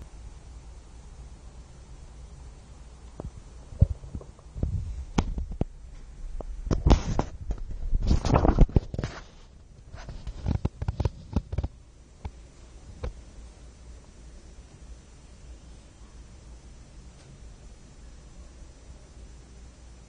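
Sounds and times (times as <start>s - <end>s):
pet's stomach rumbling and gurgling: 3.2s - 5.7s, 6.3s - 11.8s.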